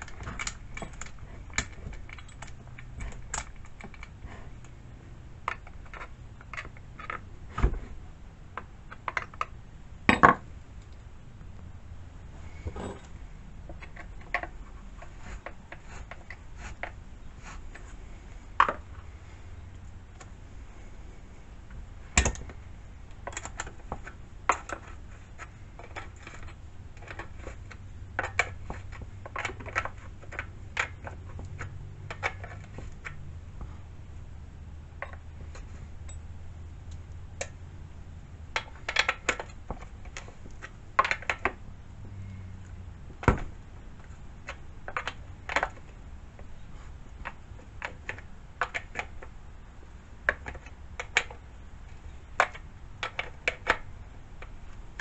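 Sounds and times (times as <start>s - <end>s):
metallic clicks and clinks: 0.0s - 4.2s.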